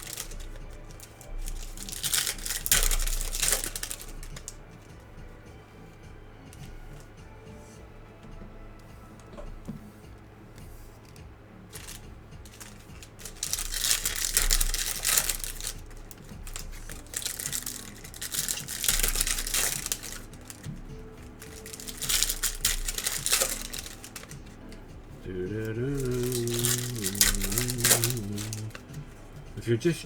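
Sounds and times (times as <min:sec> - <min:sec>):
wrappers torn and crinkled: 0:00.0 - 0:04.7, 0:11.7 - 0:29.3.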